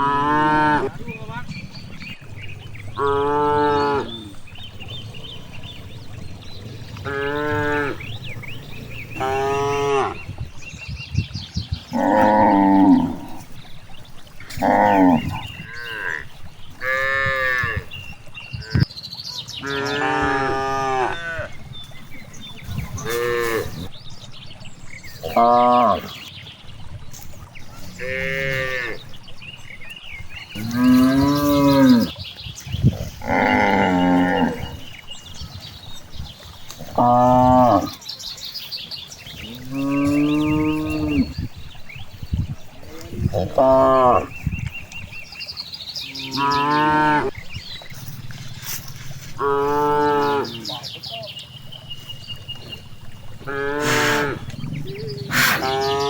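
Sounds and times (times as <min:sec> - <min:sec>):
cattle mooing: 0:00.0 - 0:01.1, 0:03.0 - 0:06.0, 0:06.6 - 0:10.2, 0:14.5 - 0:17.9, 0:19.6 - 0:21.6, 0:23.0 - 0:23.9, 0:27.8 - 0:29.0, 0:33.2 - 0:34.8, 0:39.4 - 0:41.4, 0:42.8 - 0:44.3, 0:48.0 - 0:50.7, 0:53.4 - 0:56.0.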